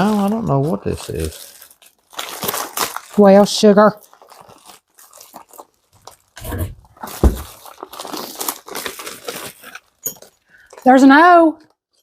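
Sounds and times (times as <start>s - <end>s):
plastic packaging crinkling: 0.0s - 12.0s
dull thumps: 6.4s - 7.6s.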